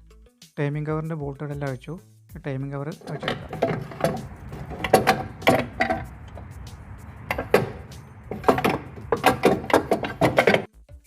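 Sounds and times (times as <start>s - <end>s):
tools knocking and clinking metal: 3.0s - 10.7s.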